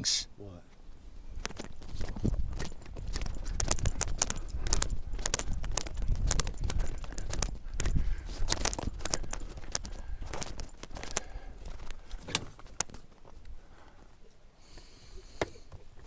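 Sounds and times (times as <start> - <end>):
wind rumble on microphone: 1.0 - 12.0
small metal objects jingling: 1.6 - 11.9.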